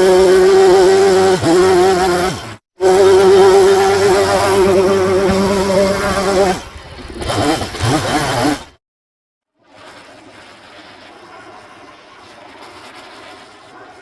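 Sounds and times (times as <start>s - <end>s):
chainsaw running: 0.0s - 8.8s.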